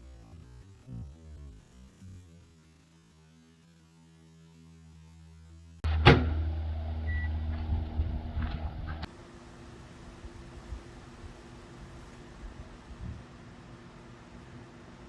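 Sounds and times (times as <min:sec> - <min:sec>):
microwave oven humming: 0:05.8 - 0:09.1
sharp crack: 0:05.8 - 0:09.1.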